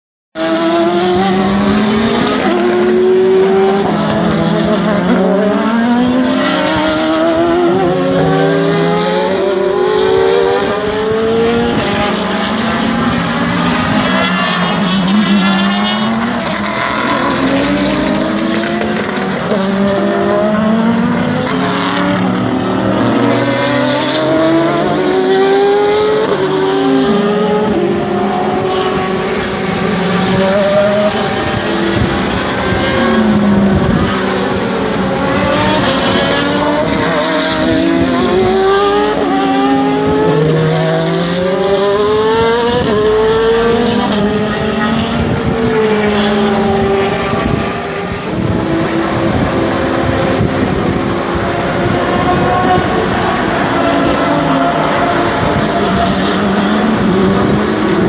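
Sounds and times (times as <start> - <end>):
race car engines revving: 0.4 - 58.0.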